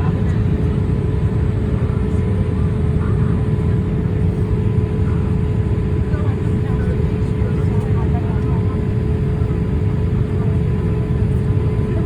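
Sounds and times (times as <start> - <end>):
engine and airflow rumble: 0.0 - 12.0.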